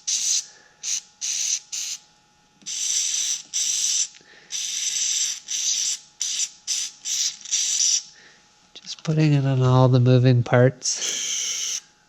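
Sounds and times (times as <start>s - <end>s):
aerosol can hissing bursts: 0.0s - 2.0s, 2.6s - 8.1s, 11.0s - 11.8s.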